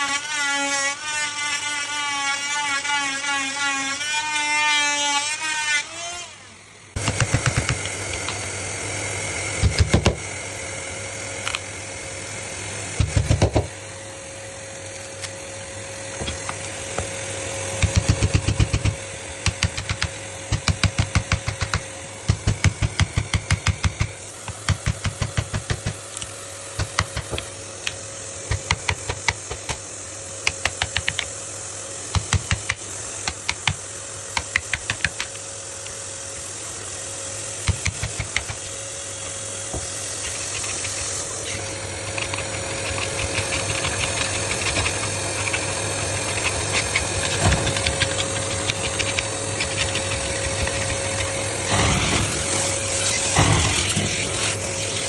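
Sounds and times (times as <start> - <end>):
machine hum with high whine: 0.0 - 55.0.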